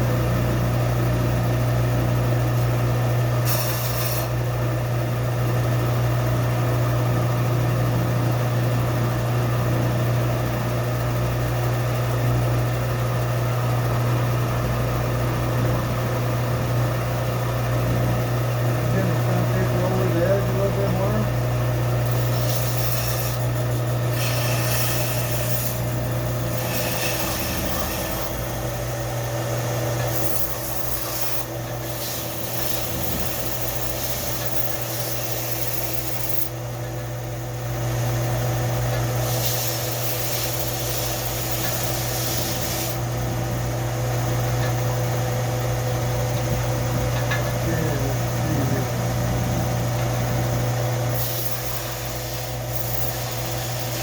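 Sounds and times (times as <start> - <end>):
belt sander motor hum: 0.0 - 54.0
metal blade grinding hiss: 3.4 - 4.3, 22.1 - 28.4, 30.1 - 36.5, 39.2 - 43.0, 51.1 - 54.0.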